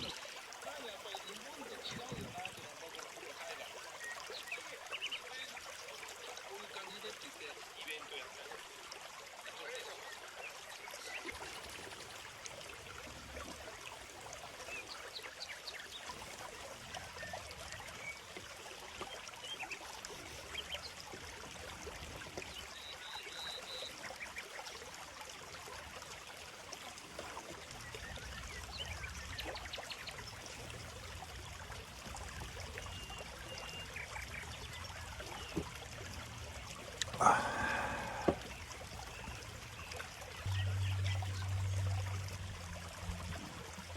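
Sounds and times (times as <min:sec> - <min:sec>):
stream babbling: 0:00.0 - 0:43.9.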